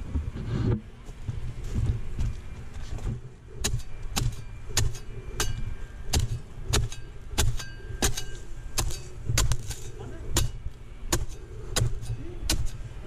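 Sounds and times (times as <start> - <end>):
blade chopping palm fronds: 3.6 - 13.0.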